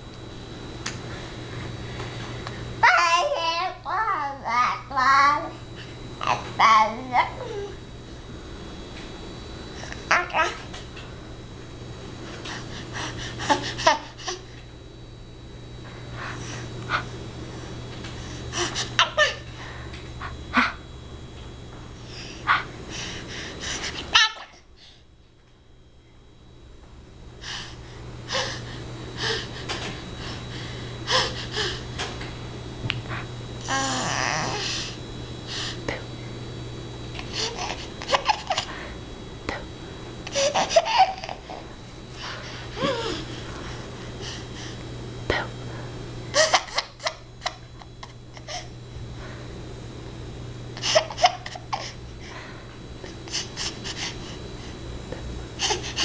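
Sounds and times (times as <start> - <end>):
steady low hum: 0.0 - 56.0.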